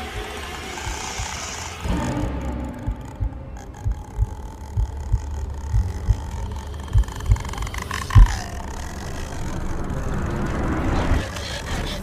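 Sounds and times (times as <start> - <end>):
slow heartbeat thumps: 0.0 - 8.6
low rumbling drone: 0.0 - 11.3.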